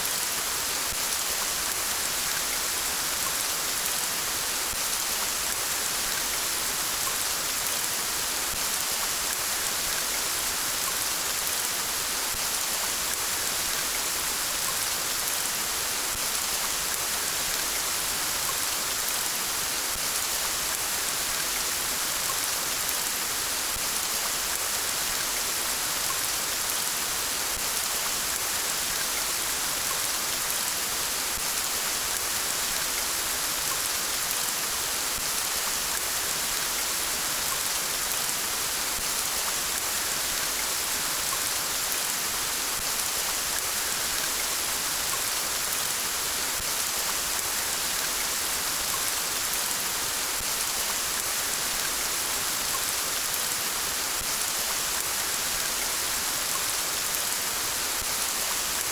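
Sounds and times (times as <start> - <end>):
steady rain falling: 0.0 - 58.9.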